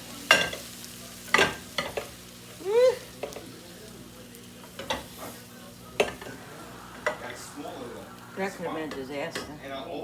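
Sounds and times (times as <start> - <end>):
food sizzling in a pan: 0.0 - 10.0.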